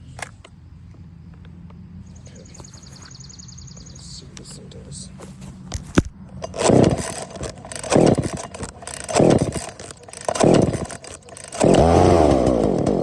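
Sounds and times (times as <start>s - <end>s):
chainsaw engine running: 5.0s - 13.0s
chainsaw recoil starter pulls: 5.7s - 13.0s.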